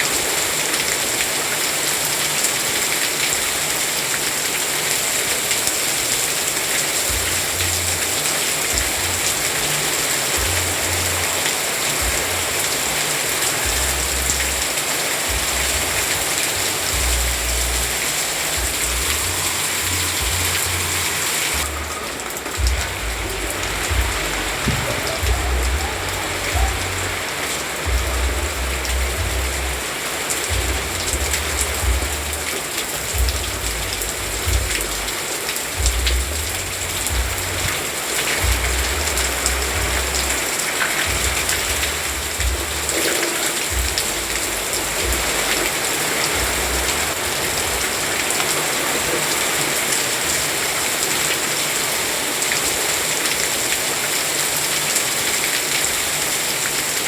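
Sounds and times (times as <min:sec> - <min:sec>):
steady rain falling: 0:00.0 - 0:57.0
low rumble: 0:18.6 - 0:27.3.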